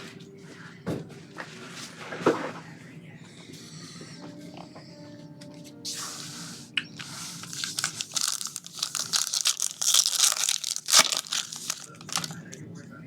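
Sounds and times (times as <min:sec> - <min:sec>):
wrapper crinkling: 0:07.0 - 0:12.6
wrapper tearing: 0:07.4 - 0:12.5.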